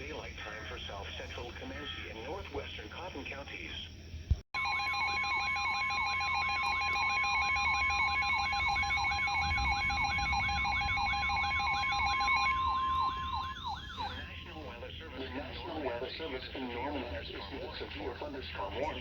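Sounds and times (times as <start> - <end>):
steady two-note alert tone: 4.6 - 14.3
sweeping siren-like tone: 4.6 - 14.6.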